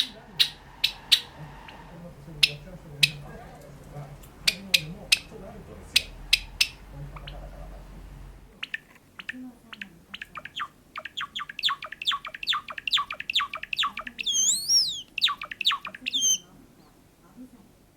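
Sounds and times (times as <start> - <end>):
sparrow chirping: 0.0 - 3.3, 4.4 - 7.4, 8.6 - 16.4.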